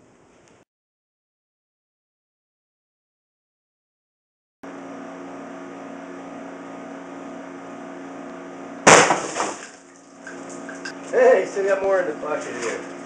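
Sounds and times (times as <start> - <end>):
steady mechanical hum: 4.7 - 13.0.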